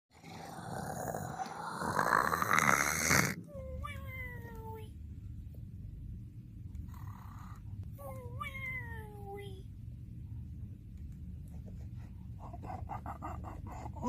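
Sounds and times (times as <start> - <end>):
low hum: 3.3 - 14.0.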